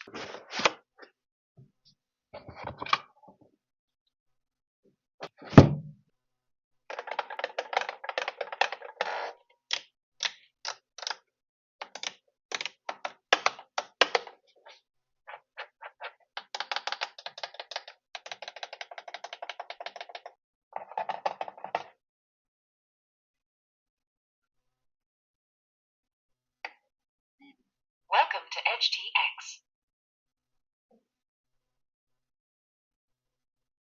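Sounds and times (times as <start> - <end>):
heavy thump: 5.5 - 5.9.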